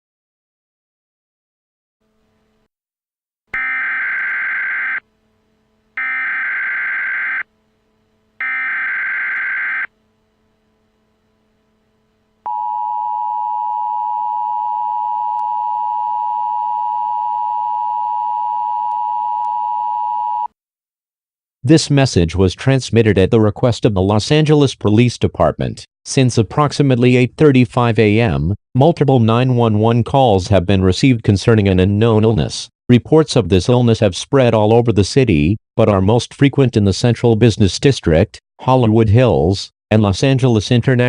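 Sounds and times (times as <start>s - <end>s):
harsh data bursts: 3.6s - 5.0s, 6.0s - 7.4s, 8.4s - 9.9s.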